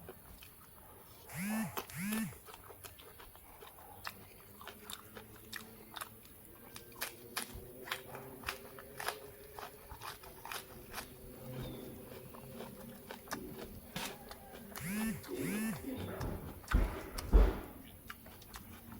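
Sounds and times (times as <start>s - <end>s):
person chewing crunchy food: 0.0s - 18.9s.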